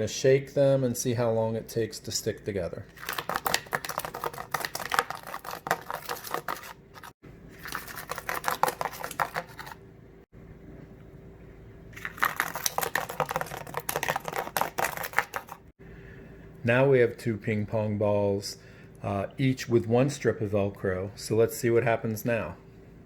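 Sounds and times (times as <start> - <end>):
balls rattling in container: 3.0 - 9.7, 12.0 - 15.7.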